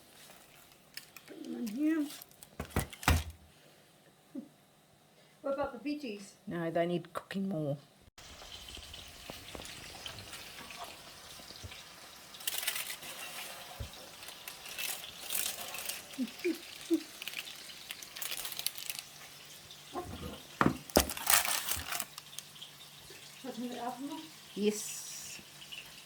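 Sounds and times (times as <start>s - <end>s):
frying pan sizzling: 8.2s - 26.0s
metal utensils clinking and scraping: 9.5s - 19.2s, 19.9s - 22.5s.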